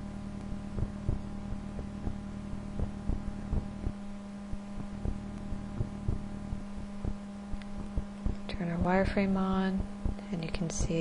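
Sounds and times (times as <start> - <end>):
electrical hum: 0.0 - 11.0
soft low clicks: 0.3 - 8.5.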